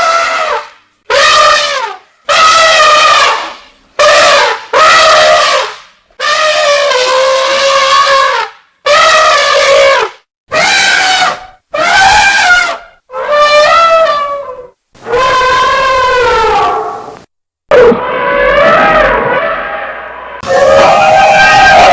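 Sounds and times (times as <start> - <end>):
elephant trumpeting: 20.4 - 21.9.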